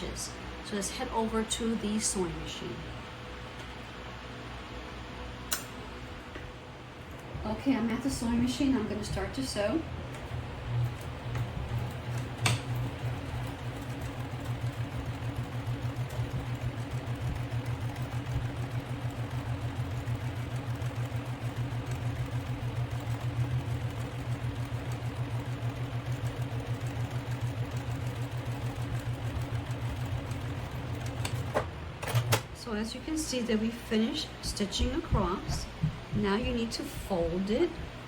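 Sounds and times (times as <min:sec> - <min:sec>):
sewing machine running: 0:08.9 - 0:32.5.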